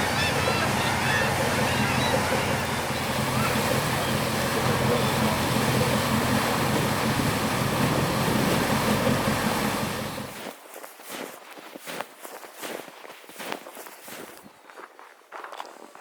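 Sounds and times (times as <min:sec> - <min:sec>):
low hum: 0:00.0 - 0:10.4
water rushing: 0:00.0 - 0:10.5.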